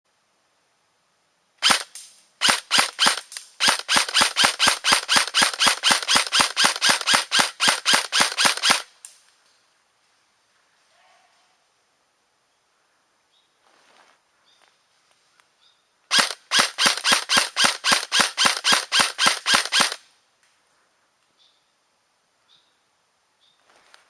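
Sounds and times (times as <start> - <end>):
gunshots: 1.6 - 8.9, 16.1 - 20.0.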